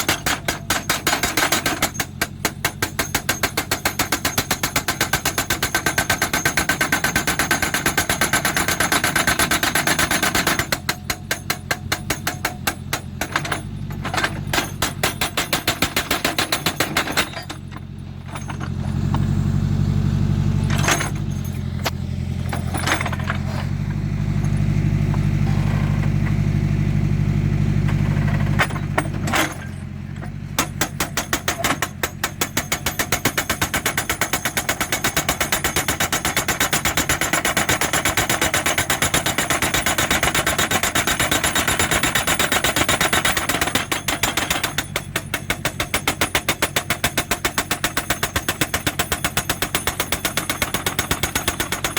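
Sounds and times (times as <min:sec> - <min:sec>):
rock breaker hammering rock: 0:00.0 - 0:19.2, 0:20.6 - 0:25.3, 0:27.8 - 0:51.9
diesel engine running hard: 0:00.0 - 0:33.3.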